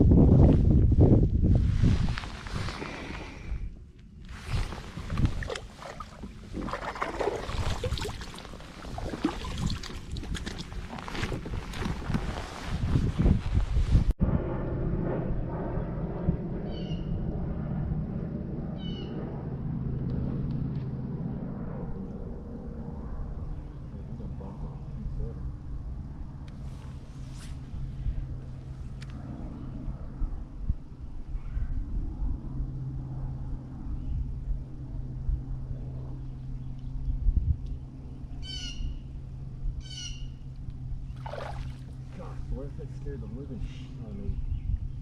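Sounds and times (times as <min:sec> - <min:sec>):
low hum: 0:00.0 - 0:45.0
boat motor humming: 0:04.3 - 0:12.2, 0:32.6 - 0:44.5
high-pitched bird calls: 0:16.7 - 0:17.1, 0:38.4 - 0:39.1, 0:39.8 - 0:40.4
harsh bird calls: 0:38.4 - 0:39.1.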